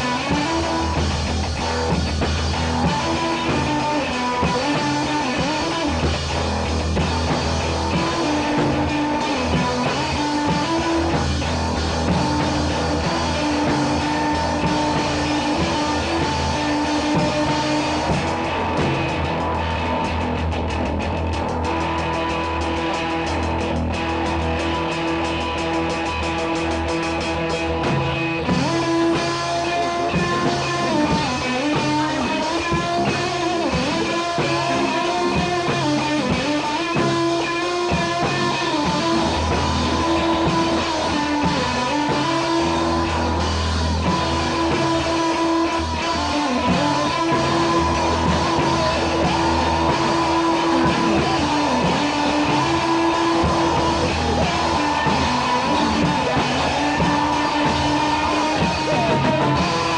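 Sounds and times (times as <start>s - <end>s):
drum kit: 0.0s - 59.9s
electric guitar: 0.0s - 59.9s
person singing: 44.1s - 59.9s.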